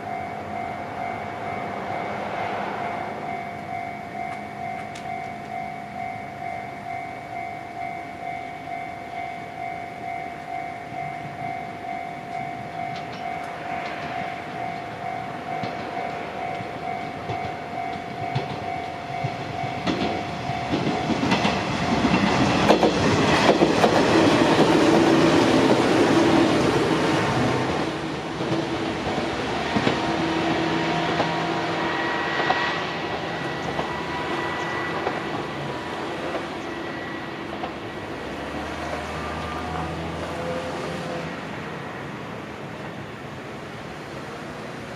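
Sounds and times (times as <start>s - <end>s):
train wheels clattering over rail joints: 12.8s - 31.4s, 32.4s - 39.2s.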